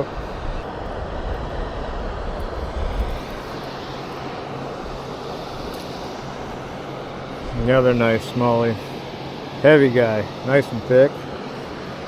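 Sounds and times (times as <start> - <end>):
low rumble: 0.5 - 3.6.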